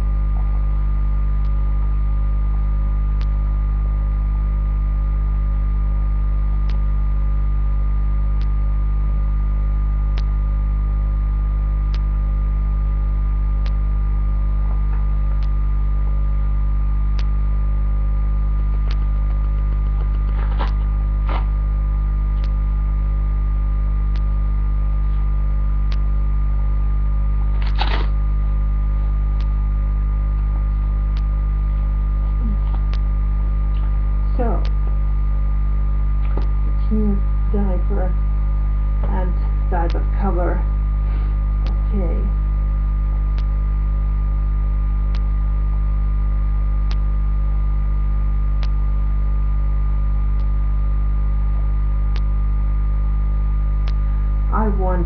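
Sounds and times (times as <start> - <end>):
electrical mains hum: 0.0 - 55.0
faint tick: 6.6 - 6.8, 10.1 - 10.3, 45.1 - 45.3.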